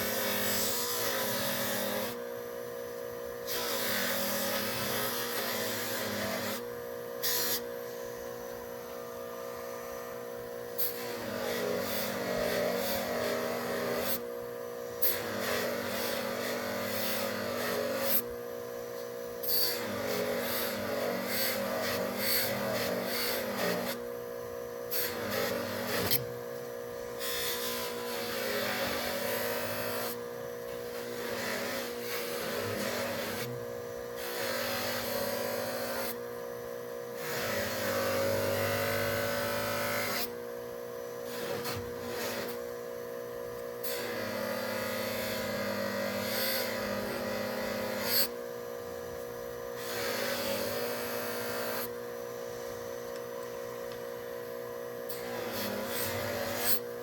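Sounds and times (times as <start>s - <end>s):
small power tool grinding: 0.0s - 2.2s, 3.5s - 7.7s, 10.7s - 14.3s, 15.0s - 18.3s, 19.4s - 24.0s, 24.9s - 26.4s, 27.2s - 36.2s, 37.2s - 40.4s, 41.2s - 42.8s, 43.8s - 48.4s, 49.7s - 52.2s, 55.0s - 57.0s.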